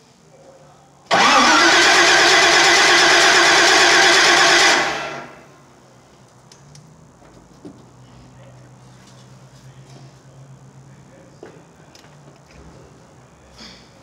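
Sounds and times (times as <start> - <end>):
car engine starter cranking: 1.1 - 5.4.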